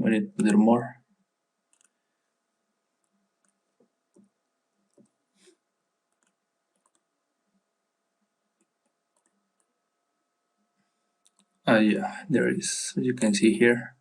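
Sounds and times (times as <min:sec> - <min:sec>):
computer mouse clicks: 0:01.7 - 0:02.0, 0:03.0 - 0:05.2, 0:06.1 - 0:07.1, 0:08.6 - 0:09.7, 0:11.2 - 0:11.6.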